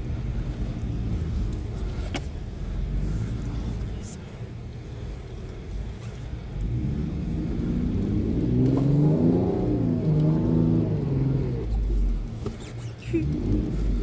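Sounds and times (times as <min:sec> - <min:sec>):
car engine revving: 0:06.4 - 0:14.0.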